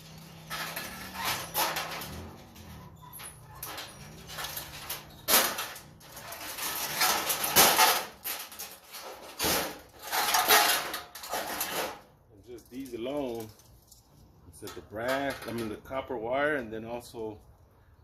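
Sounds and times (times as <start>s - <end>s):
sheet metal clanking and scraping: 0.0s - 12.2s.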